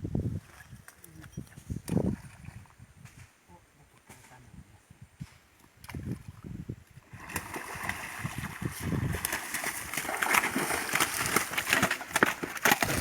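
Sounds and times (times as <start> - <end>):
splashing in shallow river water: 0.4 - 2.8, 5.6 - 13.0.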